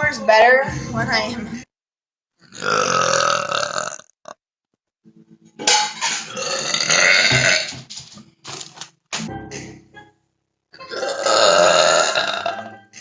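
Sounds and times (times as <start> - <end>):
woman burping loudly: 2.5 - 4.4, 6.2 - 7.8, 10.8 - 12.8.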